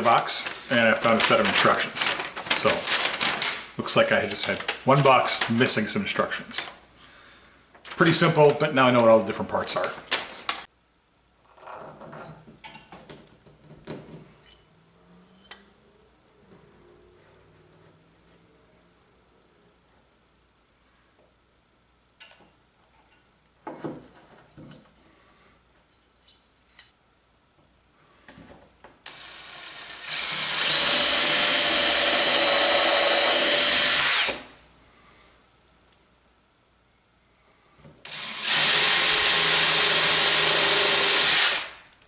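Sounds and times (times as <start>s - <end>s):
power drill running: 29.0s - 34.5s, 38.0s - 41.9s.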